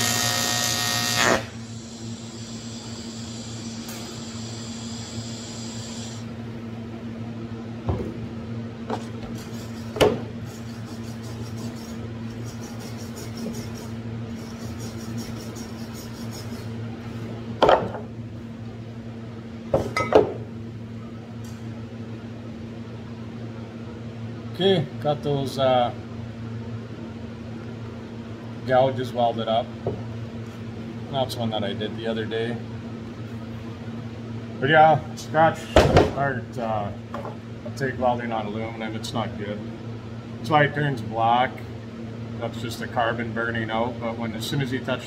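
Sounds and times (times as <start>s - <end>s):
welding buzz: 0.0s - 6.3s
steady low hum: 0.0s - 45.0s.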